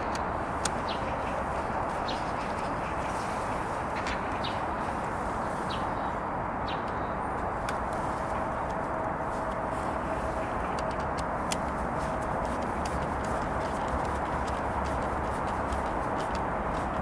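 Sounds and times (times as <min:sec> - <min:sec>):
steady background noise: 0:00.0 - 0:17.0.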